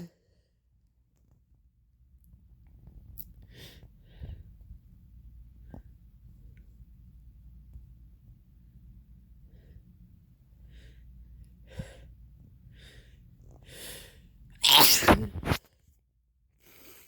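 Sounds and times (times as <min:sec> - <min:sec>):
person sneezing: 0:14.6 - 0:15.6.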